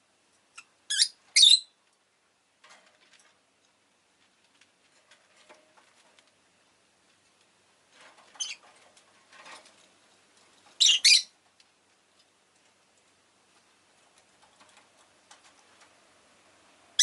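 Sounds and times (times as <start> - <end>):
bird chirping: 0.6 - 1.8, 10.8 - 11.3.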